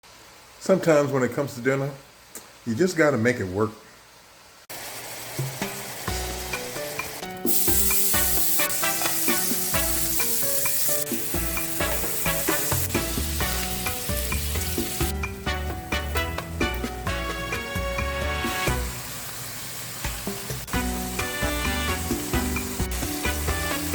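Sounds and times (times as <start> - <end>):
meat sizzling in a frying pan: 4.7 - 23.9
latin jazz music: 5.6 - 19.1, 20.2 - 23.9.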